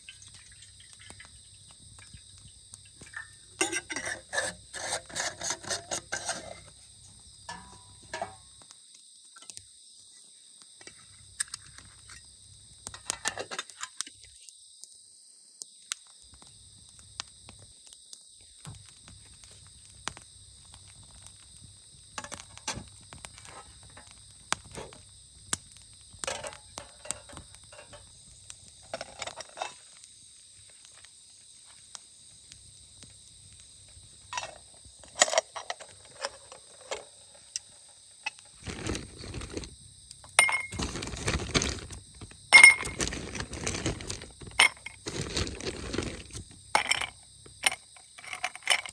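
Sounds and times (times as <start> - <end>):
insects chirring: 0.0 - 48.9
metallic clattering and clinking: 7.5 - 8.4, 26.2 - 28.1, 34.3 - 37.9, 38.5 - 39.7, 40.3 - 48.9
clicks and knocks of handling gear: 10.8 - 14.4, 25.6 - 28.1, 34.3 - 48.9.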